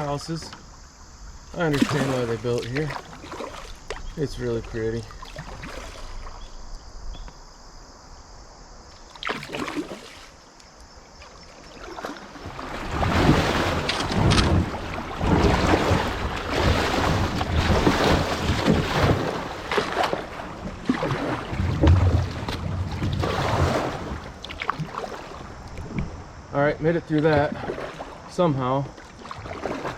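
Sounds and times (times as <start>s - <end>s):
paddle strokes and knocks: 1.5s - 6.5s, 11.2s - 26.3s, 27.0s - 29.9s
water rushing and splashing: 1.6s - 6.4s, 9.0s - 10.6s, 11.2s - 29.9s.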